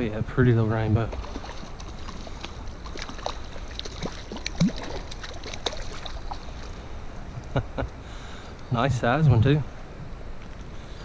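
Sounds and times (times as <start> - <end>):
small splashes and clicks: 1.1 - 6.8.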